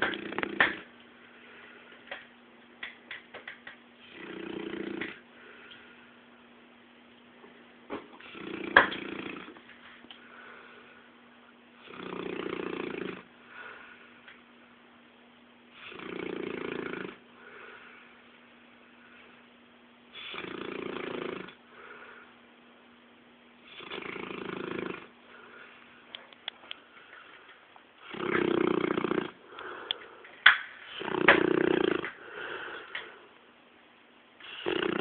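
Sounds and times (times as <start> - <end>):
dog snoring: 0.0 - 0.9, 4.0 - 5.6, 8.0 - 9.7, 11.8 - 14.0, 15.7 - 18.0, 20.1 - 22.2, 23.6 - 25.7, 28.0 - 29.9, 30.8 - 33.1, 34.4 - 35.0.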